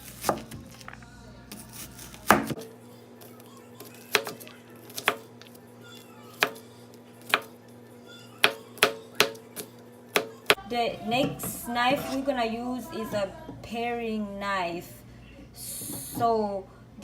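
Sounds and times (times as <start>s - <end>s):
knife chopping on cutting board: 0.1s - 0.9s, 1.5s - 2.6s, 7.2s - 7.5s, 8.4s - 10.6s.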